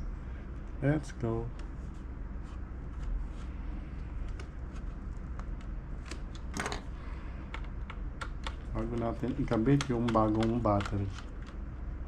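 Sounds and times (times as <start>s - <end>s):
steady low hum: 0.0s - 12.0s
laptop clicks and handling noise: 7.5s - 11.6s.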